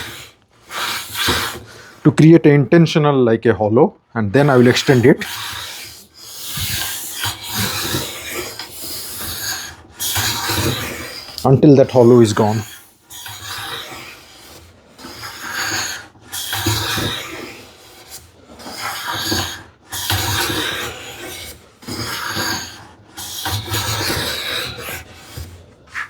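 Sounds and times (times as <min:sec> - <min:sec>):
hand plane shaving wood: 0:00.0 - 0:02.4, 0:04.4 - 0:26.0.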